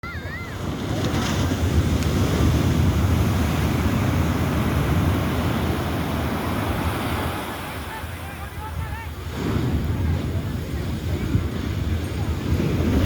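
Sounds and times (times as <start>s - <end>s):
sea waves breaking on beach: 0.1s - 13.0s.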